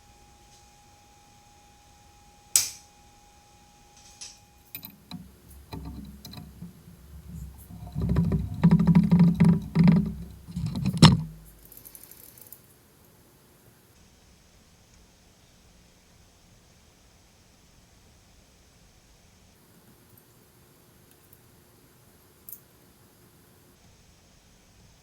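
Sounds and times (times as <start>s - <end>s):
clicks and clatter of handled objects: 4.0s - 12.6s.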